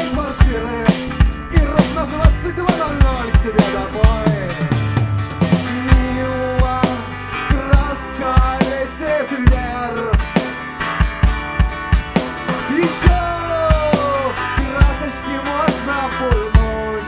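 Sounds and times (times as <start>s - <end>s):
rock band playing: 0.0s - 17.0s.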